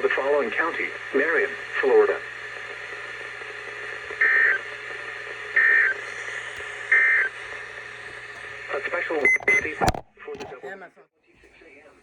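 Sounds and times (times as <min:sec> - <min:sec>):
radio hiss: 0:00.0 - 0:07.4.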